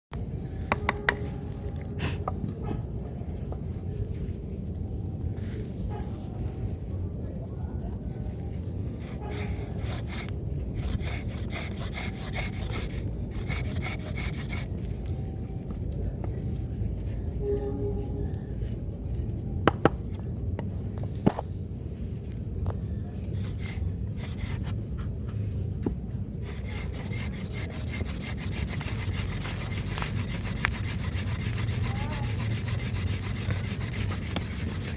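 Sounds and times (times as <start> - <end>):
crickets trilling: 0.2 - 34.9.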